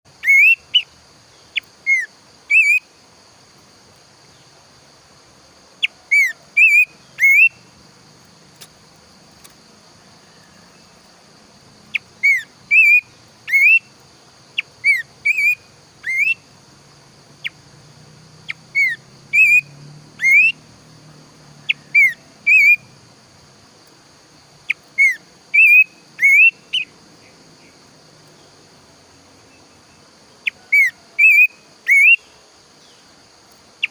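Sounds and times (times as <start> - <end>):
steady high hiss: 0.1 - 33.9
bird whistling: 0.2 - 0.9, 1.6 - 2.8, 6.1 - 7.6, 12.2 - 13.9, 14.8 - 16.4, 18.5 - 20.6, 21.7 - 22.9, 25.0 - 26.9, 30.5 - 32.2.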